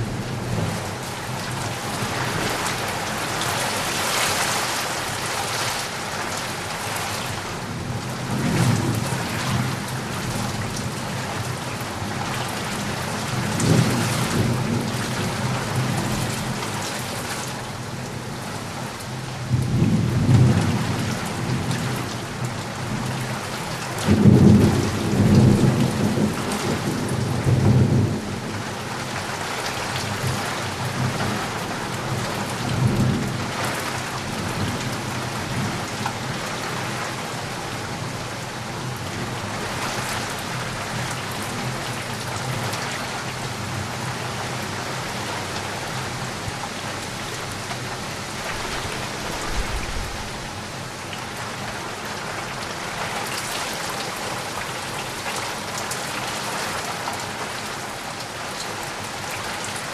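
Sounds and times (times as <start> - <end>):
steady rain falling: 0.0 - 59.9
thunder rumbling: 48.3 - 50.7.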